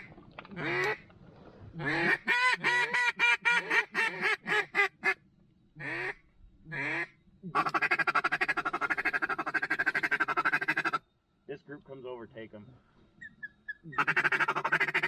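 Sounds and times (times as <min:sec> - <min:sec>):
duck call feed chuckle: 0:01.8 - 0:05.2, 0:13.7 - 0:15.0
duck call quacks: 0:01.8 - 0:05.2, 0:05.8 - 0:11.0, 0:13.9 - 0:15.0.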